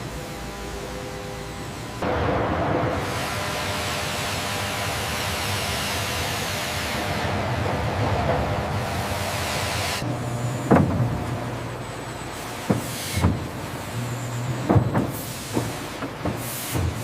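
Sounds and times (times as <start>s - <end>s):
sawmill machinery hum: 0.0s - 17.0s
sharp knocks: 10.7s - 11.3s, 14.6s - 17.0s.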